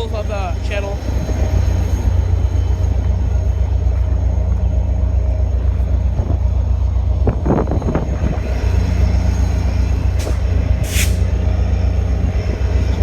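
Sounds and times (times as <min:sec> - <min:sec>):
train engine rumble: 0:00.0 - 0:13.0
short sharp hiss: 0:10.2 - 0:11.3.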